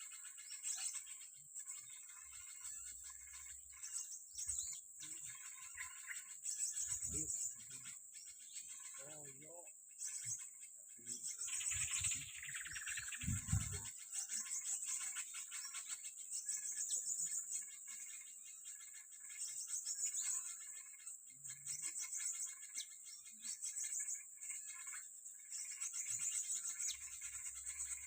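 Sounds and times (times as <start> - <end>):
high-pitched insect drone: 0.0 - 28.0
small birds chirping: 0.0 - 28.0.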